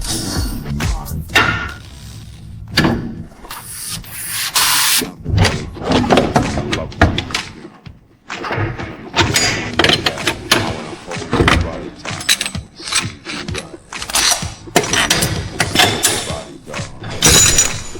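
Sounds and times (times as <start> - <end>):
knocks and clatter of car repair: 5.2 - 17.9.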